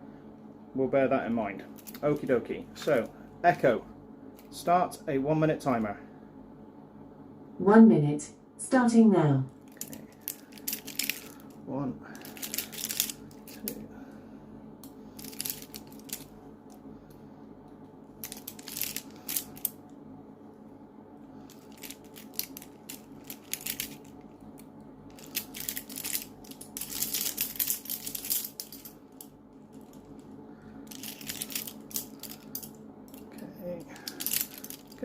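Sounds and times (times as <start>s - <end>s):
steady low hum: 0.0s - 35.0s
handcuffs clicking and rattling: 9.7s - 11.4s, 12.2s - 13.4s, 15.2s - 16.3s, 18.2s - 19.7s, 21.5s - 24.1s, 25.1s - 30.1s, 30.9s - 35.0s.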